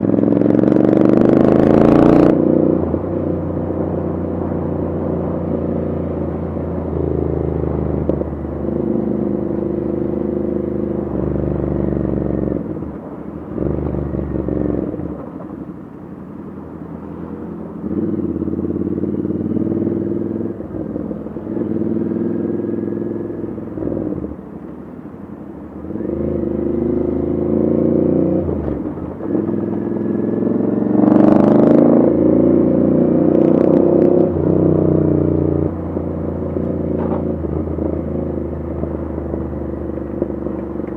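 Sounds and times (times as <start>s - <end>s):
motorcycle engine revving: 0.0s - 15.6s, 17.0s - 24.5s, 25.8s - 40.9s
exhaust pops and crackles: 36.5s - 40.9s.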